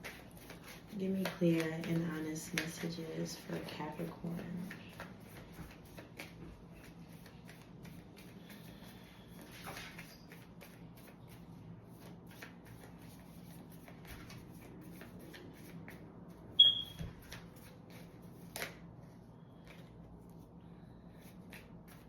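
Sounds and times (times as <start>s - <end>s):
cards being shuffled: 4.3s - 16.4s, 17.0s - 18.9s, 21.2s - 22.0s
short high ping: 16.6s - 16.9s.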